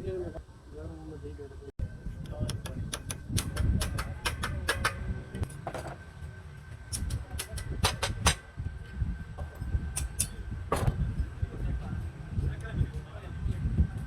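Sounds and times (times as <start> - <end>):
metal tools clicking and knocking: 2.5 - 5.9.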